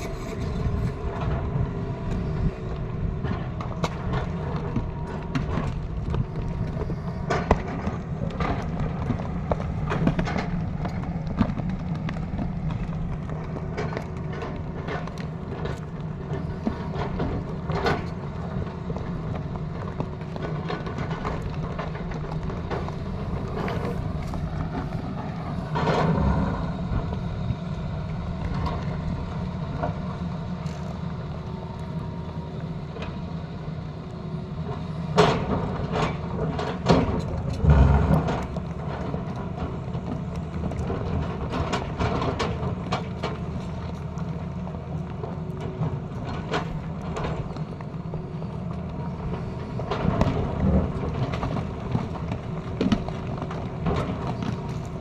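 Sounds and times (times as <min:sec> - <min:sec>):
excavator engine running: 0:00.0 - 0:55.0
bucket knocking and scraping road: 0:19.8 - 0:29.1, 0:35.2 - 0:43.8.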